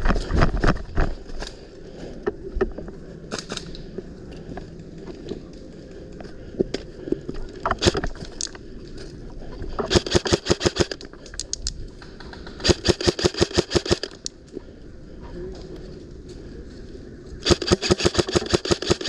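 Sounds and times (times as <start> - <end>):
airsoft rifle shots: 9.9 - 11.0, 12.6 - 14.2, 17.4 - 19.0.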